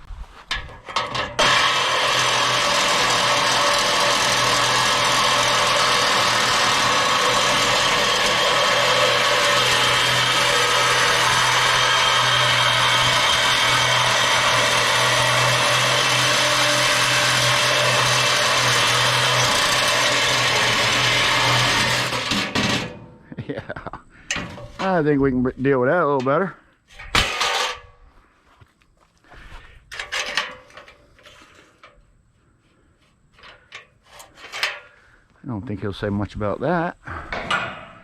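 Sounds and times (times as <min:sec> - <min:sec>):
power tool cutting metal: 0:01.0 - 0:23.1.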